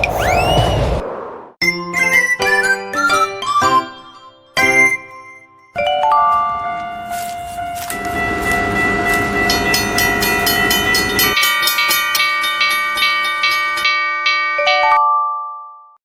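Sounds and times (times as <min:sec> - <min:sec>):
train running rumble: 0:07.0 - 0:13.2
train horn tones: 0:07.6 - 0:11.3.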